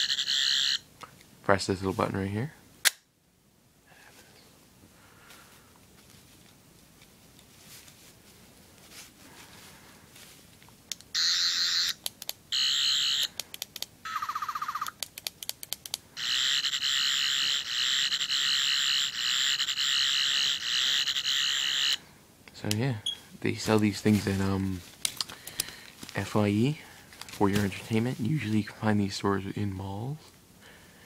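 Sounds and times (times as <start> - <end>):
toy electronic warbling buzz: 0.0 - 0.9, 11.1 - 13.4, 14.0 - 15.0, 16.2 - 22.0
toy clicks: 10.9 - 22.0.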